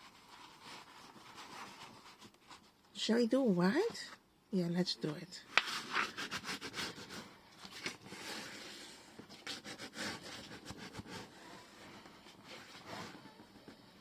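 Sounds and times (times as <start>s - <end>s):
paper rustling and folding: 0.0s - 2.8s, 5.5s - 13.8s.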